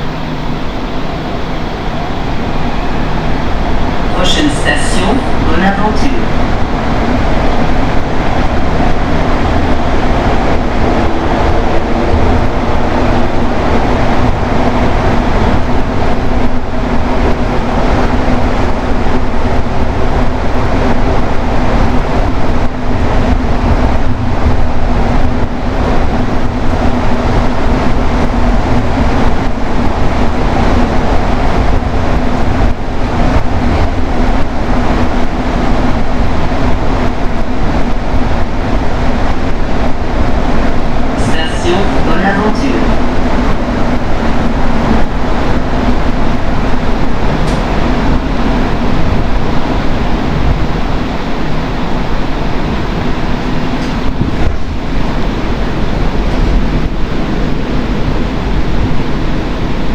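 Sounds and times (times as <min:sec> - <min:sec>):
constant hum: 0:00.0 - 0:59.9
metro train rolling rumble: 0:00.0 - 0:59.9.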